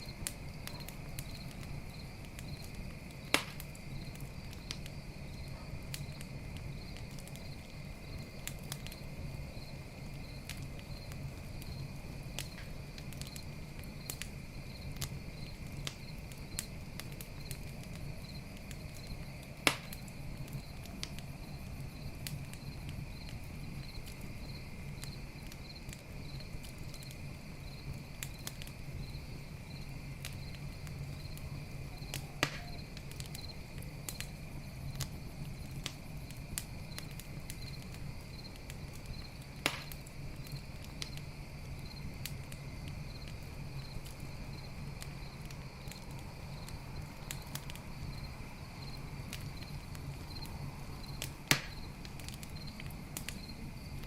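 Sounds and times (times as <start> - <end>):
campfire crackling and popping: 0.0 - 54.0
crickets chirping: 0.0 - 54.0.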